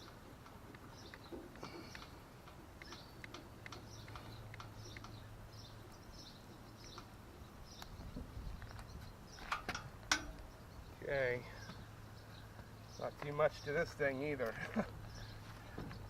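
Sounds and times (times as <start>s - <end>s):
sharp clicks: 0.0s - 5.2s.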